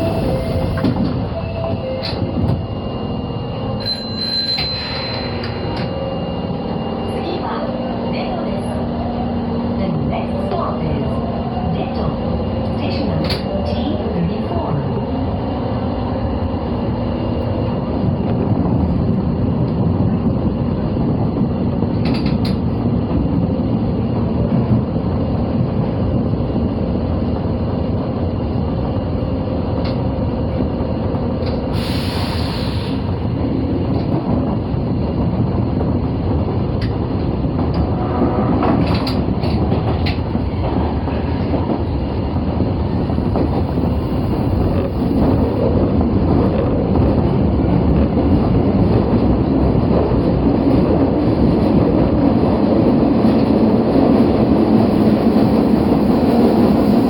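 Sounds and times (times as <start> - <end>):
subway train wheels rumbling: 0.0 - 57.0.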